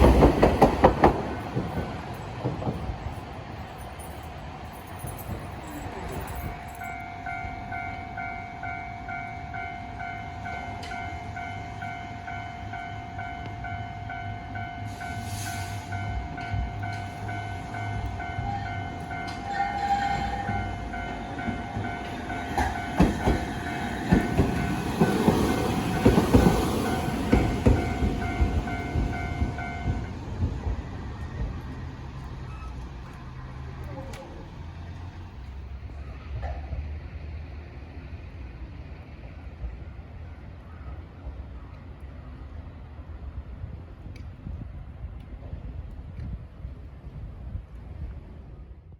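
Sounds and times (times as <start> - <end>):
streetcar wheels clacking: 0.0 - 42.0
level crossing alarm bell: 6.2 - 30.2.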